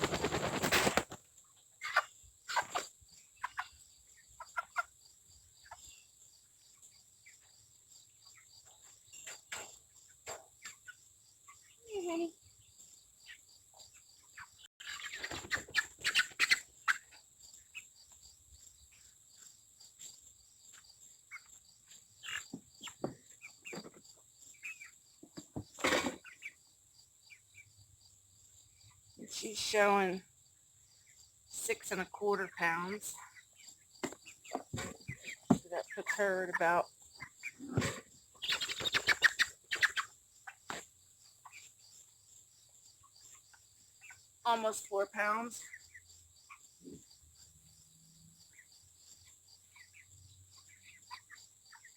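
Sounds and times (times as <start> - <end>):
chicks peeping: 1.8 - 4.9, 13.2 - 17.9, 31.6 - 47.1, 50.6 - 51.9.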